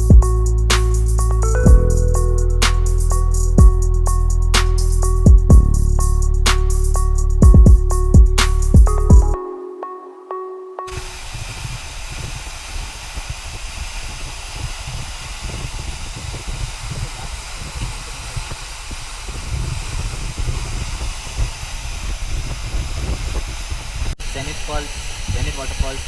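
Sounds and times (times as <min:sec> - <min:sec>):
waterfall rushing: 0:10.9 - 0:26.0.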